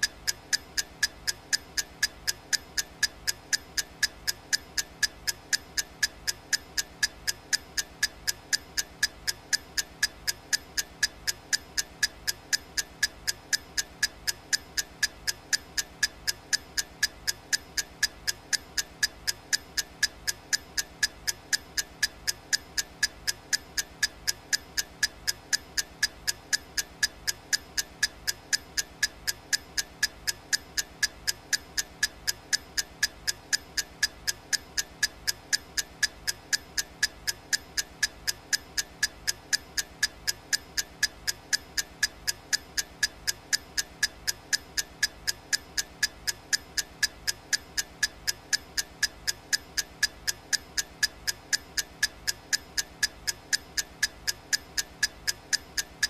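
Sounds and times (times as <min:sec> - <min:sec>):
clock ticking: 0:00.0 - 0:56.0.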